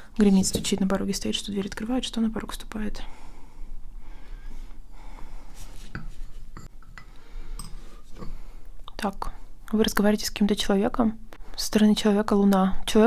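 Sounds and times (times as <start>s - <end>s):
crockery clinking: 5.9s - 8.4s.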